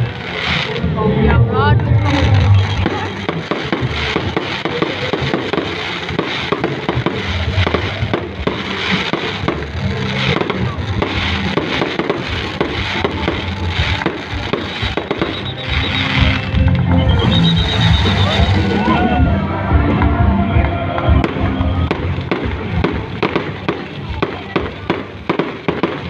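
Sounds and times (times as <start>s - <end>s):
fireworks crackling and popping: 0.0s - 26.0s.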